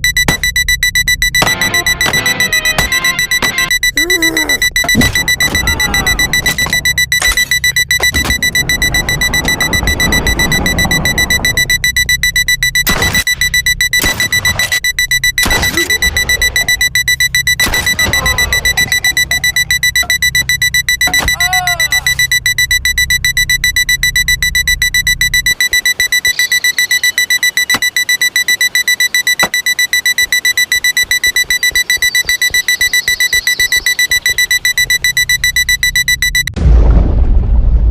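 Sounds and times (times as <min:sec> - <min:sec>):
alarm clock beeping: 0:00.0 - 0:36.6
music: 0:01.4 - 0:03.7
low rumble: 0:05.2 - 0:12.9, 0:36.6 - 0:37.9.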